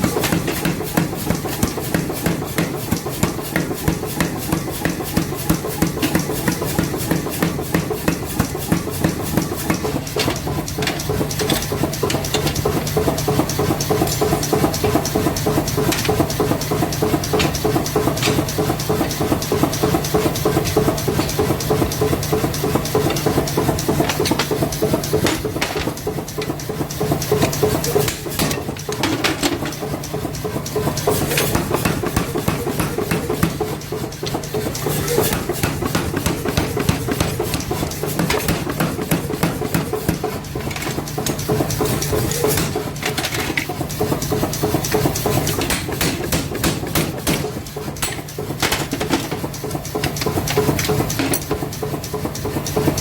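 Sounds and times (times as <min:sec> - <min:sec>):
machine hum and hiss: 0:00.0 - 0:53.0
hammer striking hot steel: 0:45.5 - 0:49.0.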